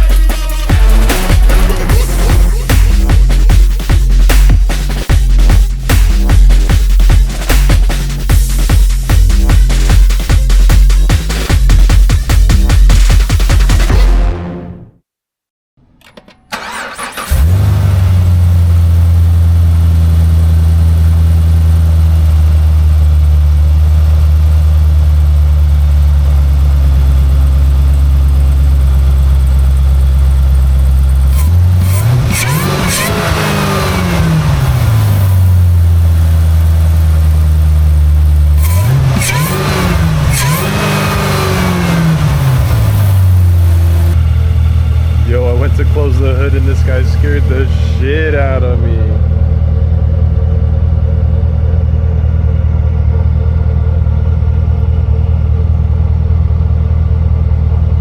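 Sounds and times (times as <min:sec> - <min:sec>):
car engine starting and idling: 0:00.0 - 0:14.5, 0:15.8 - 0:58.0
supercharger whine: 0:00.0 - 0:14.5, 0:16.5 - 0:58.0
engine revving: 0:00.0 - 0:14.8, 0:16.6 - 0:23.9, 0:30.0 - 0:51.6.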